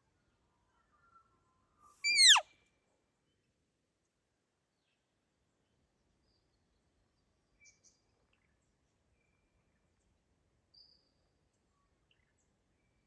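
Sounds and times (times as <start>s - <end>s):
faint bird calls: 2.1s - 2.4s.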